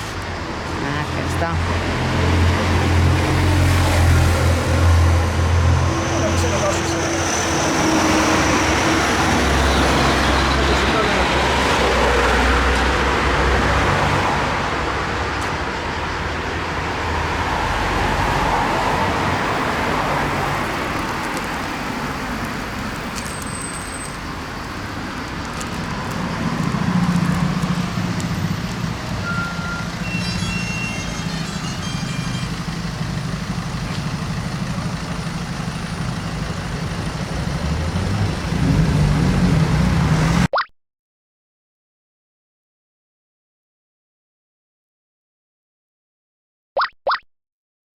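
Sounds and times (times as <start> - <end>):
vehicle engine running: 20.3 - 29.2, 31.1 - 38.6
short electronic beeps: 29.2 - 32.6.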